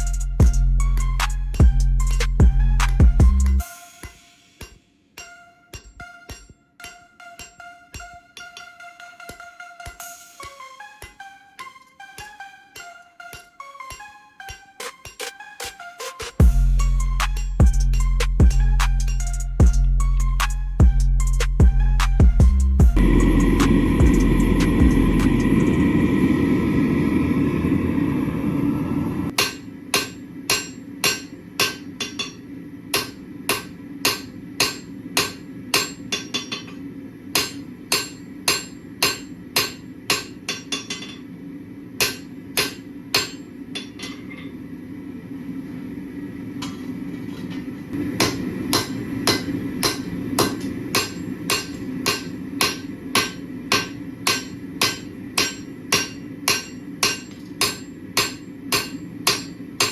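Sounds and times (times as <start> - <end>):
hammer striking steel on anvil: 1.0 - 15.7, 16.4 - 19.8, 29.1 - 41.4, 42.0 - 44.6, 46.6 - 59.9.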